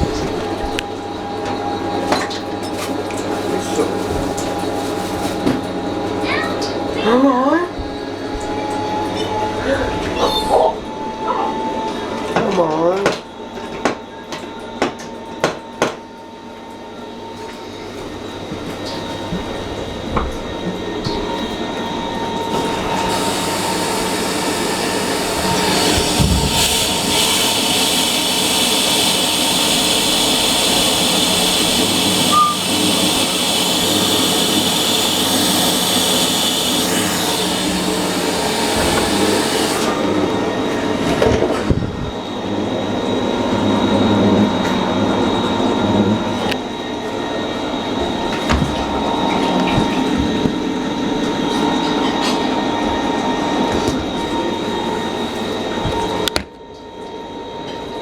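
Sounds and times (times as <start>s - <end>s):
washing machine drone: 0.0s - 58.0s
thin steady whine: 21.7s - 40.8s
high hiss: 22.6s - 40.0s.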